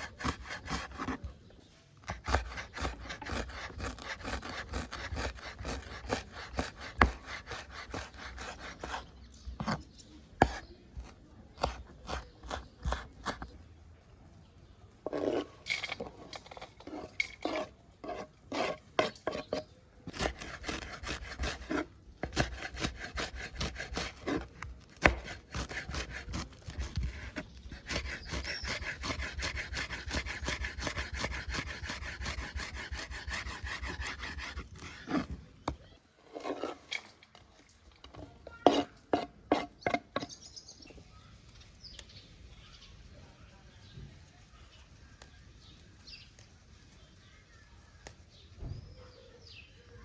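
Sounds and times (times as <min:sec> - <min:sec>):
utensil scraping food: 0:00.0 - 0:13.6, 0:15.0 - 0:40.9.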